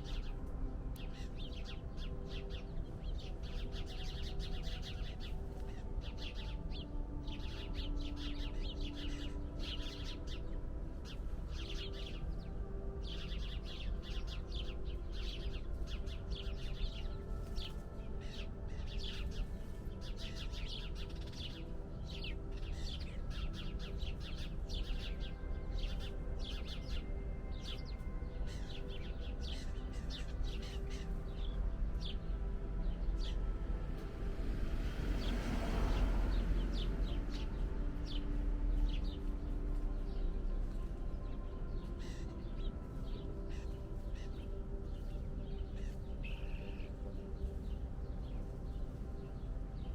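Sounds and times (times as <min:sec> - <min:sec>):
songbirds chirping: 0:00.0 - 0:49.9
steady low rumble: 0:29.2 - 0:49.9.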